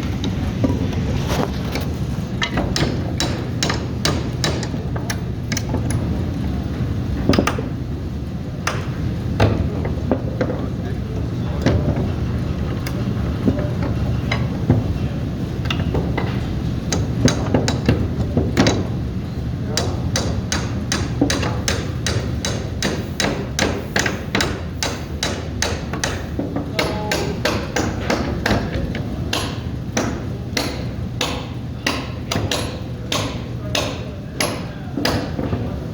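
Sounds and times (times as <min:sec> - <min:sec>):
steady low hum: 0:00.0 - 0:35.9
hammer striking metal: 0:19.8 - 0:35.5.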